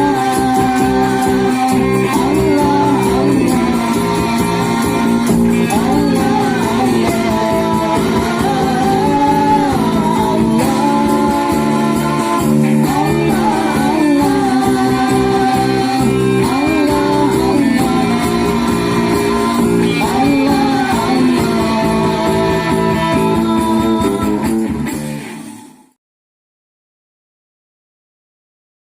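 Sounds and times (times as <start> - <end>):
voices singing: 0.0 - 24.7
sustained instrumental chords: 0.0 - 25.6.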